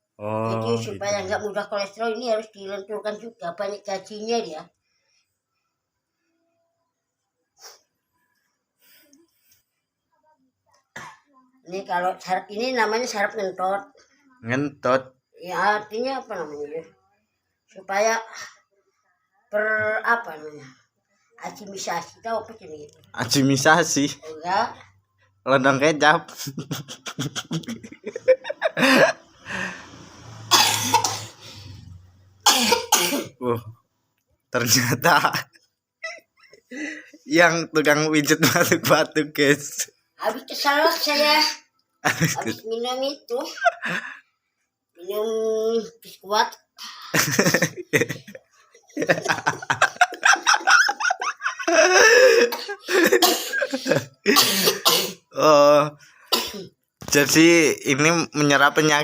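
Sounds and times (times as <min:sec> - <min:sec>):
people laughing: 0:26.3 - 0:29.7, 0:47.2 - 0:54.0
man coughing: 0:28.8 - 0:29.2, 0:30.5 - 0:31.4, 0:32.4 - 0:33.4, 0:51.6 - 0:55.4.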